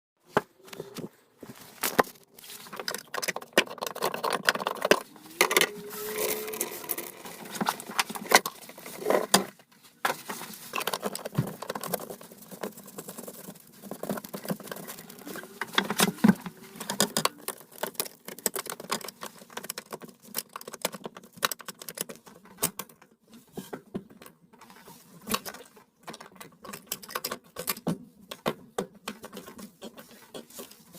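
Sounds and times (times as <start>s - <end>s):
clicks taps and rattles: 2.7s - 5.6s, 7.5s - 23.1s.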